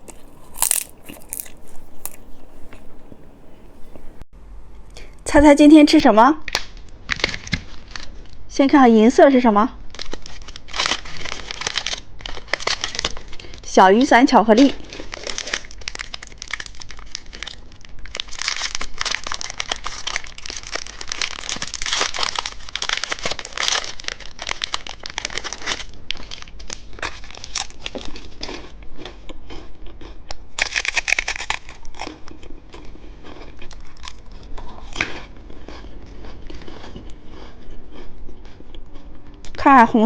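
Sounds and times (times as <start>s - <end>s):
foil and plastic wrapper crinkling: 0.0s - 4.2s, 9.9s - 13.6s, 14.8s - 28.3s.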